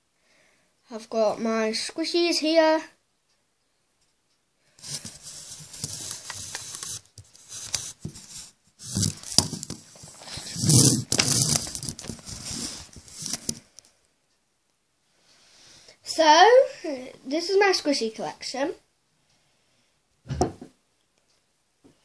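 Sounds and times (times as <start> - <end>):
squishy toys rustling and crinkling: 4.8 - 13.6.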